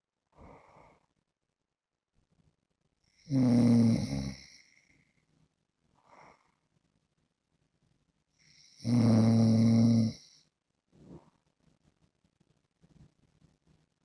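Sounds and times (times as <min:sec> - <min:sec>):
soft breaths: 0:00.2 - 0:01.4, 0:04.3 - 0:07.2, 0:10.1 - 0:14.0
man snoring: 0:03.2 - 0:04.6, 0:08.5 - 0:10.4.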